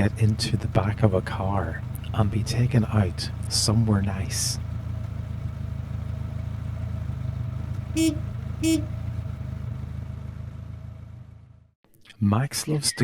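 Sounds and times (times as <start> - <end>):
car engine humming: 0.0 - 11.8
car horn toots: 7.8 - 9.3.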